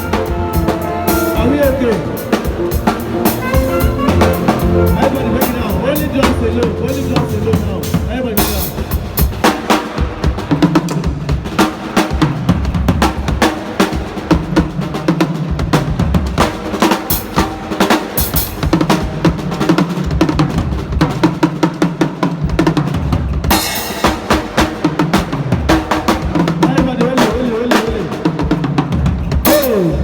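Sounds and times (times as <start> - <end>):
low bass line: 0.0 - 8.9
fast drum kit playing: 0.0 - 30.0.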